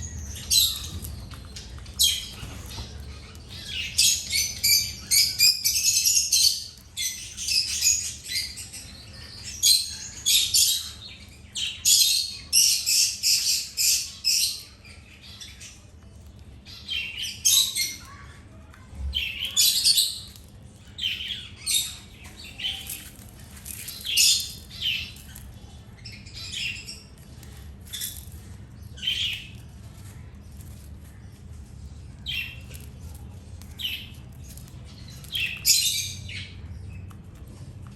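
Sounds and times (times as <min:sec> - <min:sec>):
birds chirping: 0:00.0 - 0:37.9.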